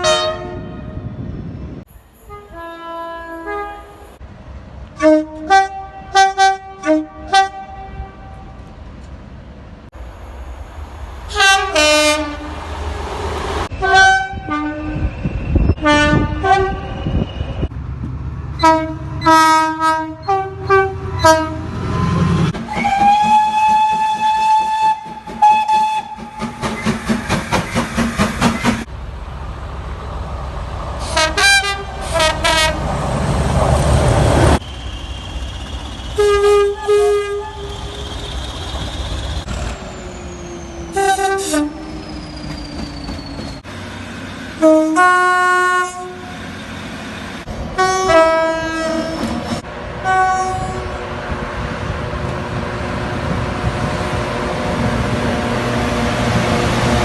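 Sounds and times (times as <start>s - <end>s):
train horn blasts: 0.0s - 1.2s, 2.2s - 4.2s, 5.0s - 8.7s, 11.3s - 12.7s, 13.7s - 17.2s, 18.6s - 26.3s, 31.0s - 32.9s, 36.2s - 38.0s, 40.9s - 41.8s, 44.6s - 46.3s, 47.7s - 49.4s, 50.0s - 51.1s
rumble of passing trains: 0.0s - 57.0s.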